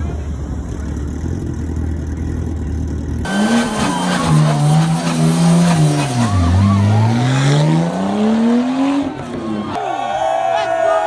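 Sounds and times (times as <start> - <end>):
car engine rumbling: 0.0 - 9.8
car engine revving hard: 3.2 - 9.5.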